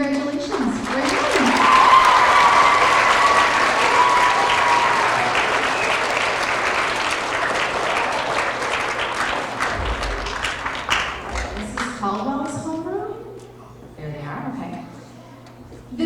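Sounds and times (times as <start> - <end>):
high cheer: 0.0 - 12.1
children applauding: 0.0 - 12.3.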